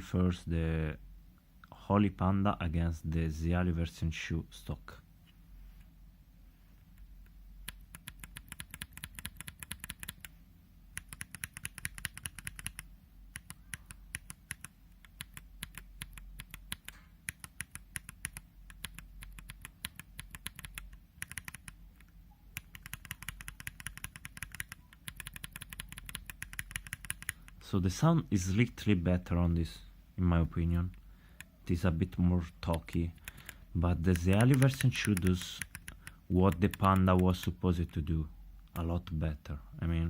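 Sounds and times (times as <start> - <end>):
mechanical keyboard keystrokes: 7.6 - 10.3, 11.0 - 21.8, 22.5 - 27.6, 32.6 - 37.4.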